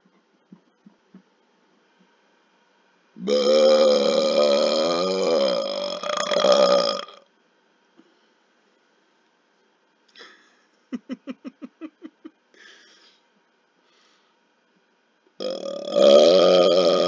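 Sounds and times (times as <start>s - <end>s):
loud burp: 3.2s - 7.2s, 15.4s - 17.0s
breath: 12.5s - 14.4s.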